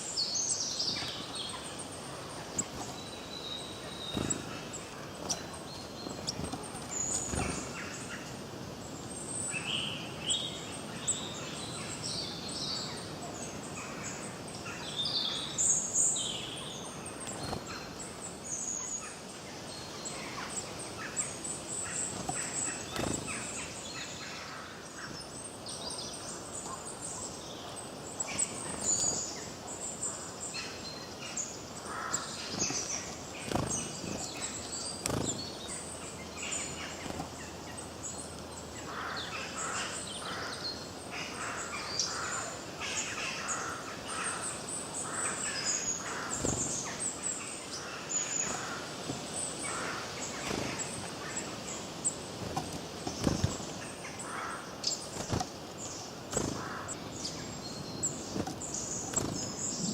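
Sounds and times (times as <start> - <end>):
birds chirping and singing: 0.0 - 59.9
steady background hiss: 0.0 - 59.9.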